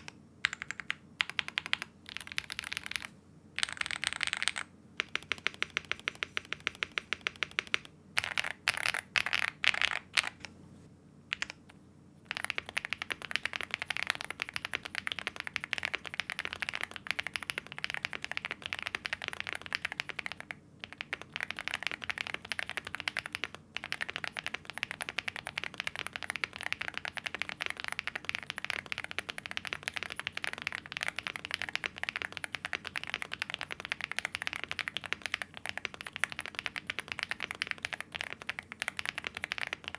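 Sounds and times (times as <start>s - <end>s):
mechanical keyboard typing: 0.0s - 10.5s, 11.3s - 11.6s, 12.3s - 39.9s.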